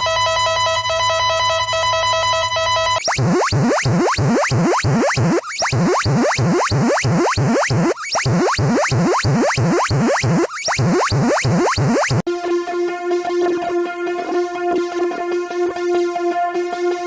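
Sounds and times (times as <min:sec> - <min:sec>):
electronic alarm with rising sweeps: 0:03.0 - 0:12.2.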